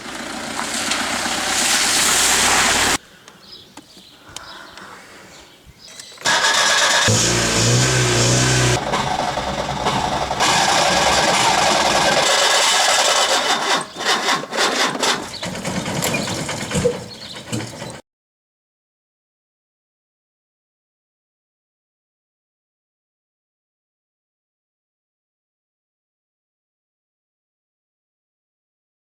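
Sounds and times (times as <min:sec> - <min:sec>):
car engine cranking: 0:06.2 - 0:14.0.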